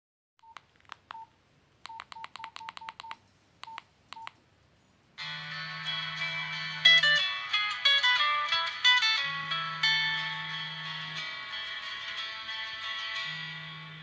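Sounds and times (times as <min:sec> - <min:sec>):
phone keypad clicks with beeps: 0:00.4 - 0:04.4
phone ringtone chord: 0:05.2 - 0:14.0.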